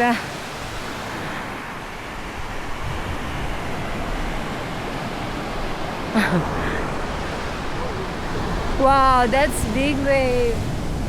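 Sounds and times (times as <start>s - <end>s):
surf breaking on beach: 0.0s - 11.0s
wind on microphone: 0.7s - 11.0s.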